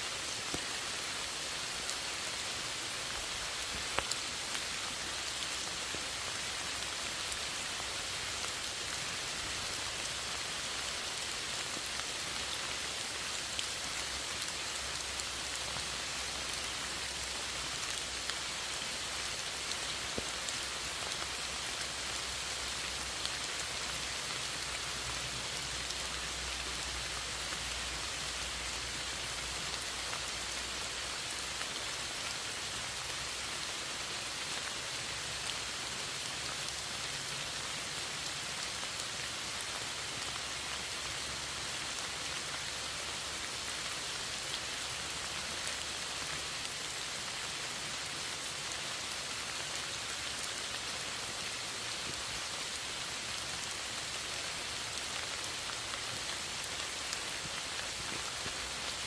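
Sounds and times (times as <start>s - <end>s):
steady rain falling: 0.0s - 59.0s
rain drop ticks: 3.5s - 4.2s.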